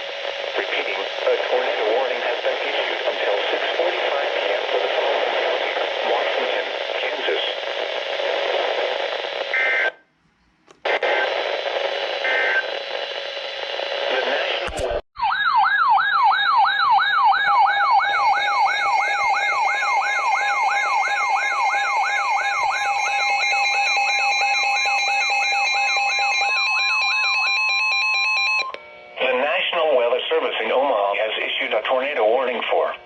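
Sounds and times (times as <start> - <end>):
radio static hiss: 0.0 - 9.9, 10.8 - 15.0, 29.2 - 33.0
click: 10.6 - 10.8
warbling emergency alert siren: 15.2 - 28.8.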